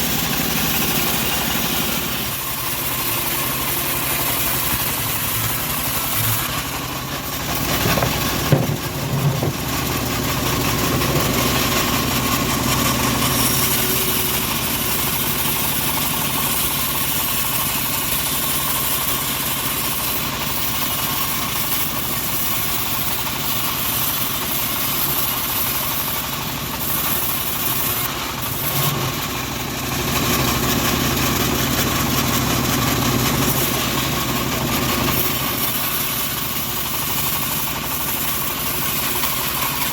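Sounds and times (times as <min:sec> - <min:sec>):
bandsaw sawmill running: 0:00.0 - 0:39.9
sharp knocks: 0:07.5 - 0:10.0.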